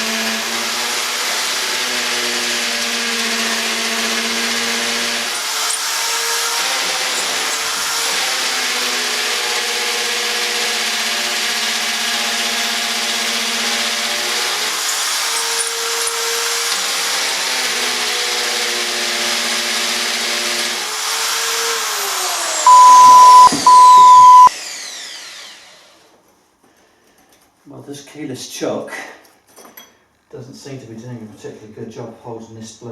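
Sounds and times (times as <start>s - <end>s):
hammer drill running: 22.6s - 25.4s
single-pitch beeps: 22.7s - 24.5s.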